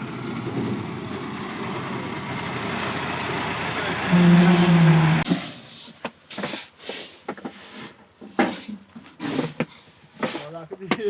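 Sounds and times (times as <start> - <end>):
farm machinery engine running: 0.0 - 5.2.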